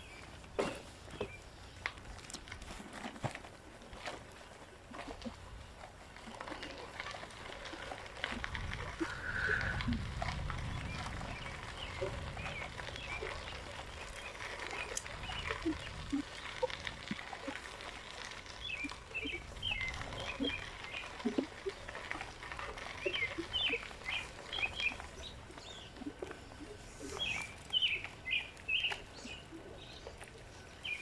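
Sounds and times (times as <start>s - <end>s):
birds chirping: 0.0s - 1.8s, 8.3s - 10.0s, 10.6s - 31.0s
short low bird calls: 9.0s - 10.0s.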